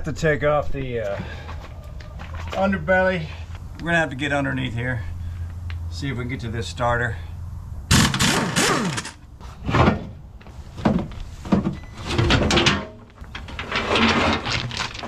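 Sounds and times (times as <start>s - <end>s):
metal scraping: 7.9s - 10.2s.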